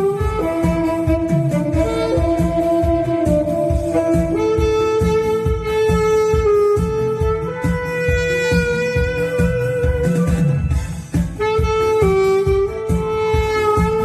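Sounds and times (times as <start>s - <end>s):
backing track low beat: 0.0s - 14.0s
tenor saxophones slow melody: 0.0s - 14.0s.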